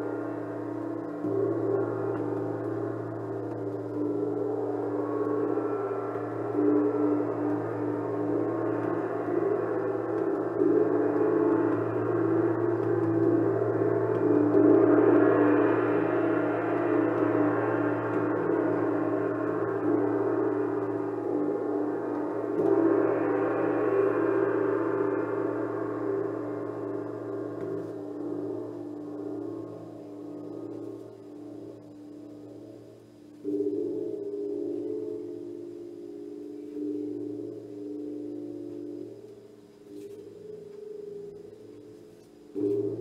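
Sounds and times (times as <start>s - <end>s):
steady low hum: 0.0s - 43.0s
gong ringing: 1.2s - 29.7s.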